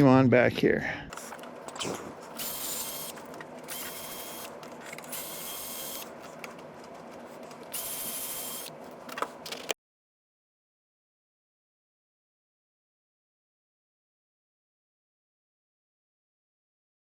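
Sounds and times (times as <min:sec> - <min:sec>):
power screwdriver whirring: 0:01.1 - 0:06.1, 0:07.7 - 0:09.8.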